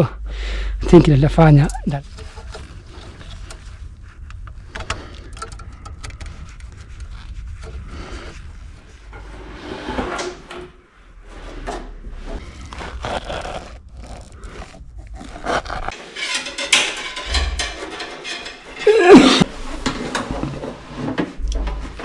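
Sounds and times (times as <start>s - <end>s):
hand tools knocking and clicking: 16.2s - 19.5s.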